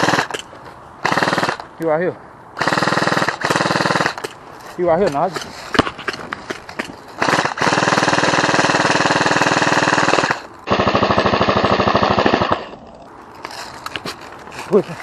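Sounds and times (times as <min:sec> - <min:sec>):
airsoft rifle firing bursts: 0:00.0 - 0:00.4, 0:01.0 - 0:01.6, 0:02.6 - 0:04.3, 0:07.2 - 0:12.7.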